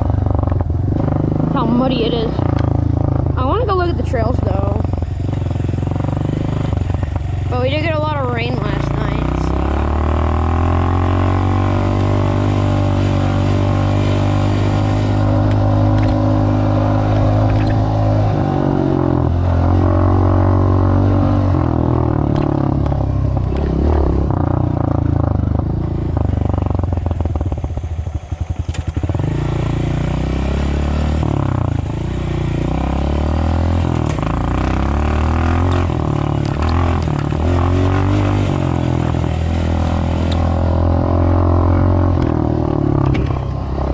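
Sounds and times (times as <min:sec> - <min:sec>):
off-road vehicle engine running: 0:00.0 - 0:43.9.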